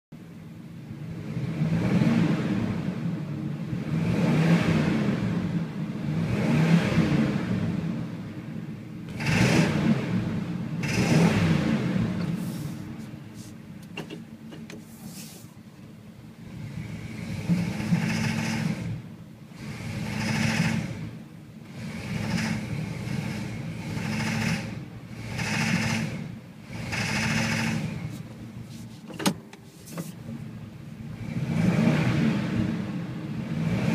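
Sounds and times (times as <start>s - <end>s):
engine revving from idle: 0.9s - 8.3s, 9.1s - 13.0s, 16.3s - 28.6s, 30.4s - 33.9s
engine knocking: 17.4s - 19.0s, 19.6s - 21.1s, 21.7s - 28.1s.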